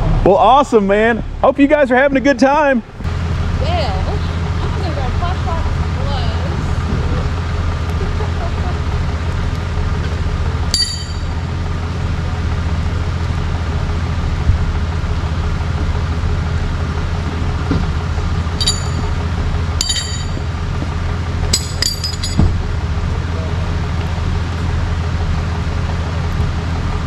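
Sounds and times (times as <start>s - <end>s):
vehicle engine idling: 0.0s - 27.0s
sharp metallic clinks: 10.7s - 11.5s, 18.6s - 20.6s, 21.5s - 22.5s
dull thump: 22.1s - 22.6s.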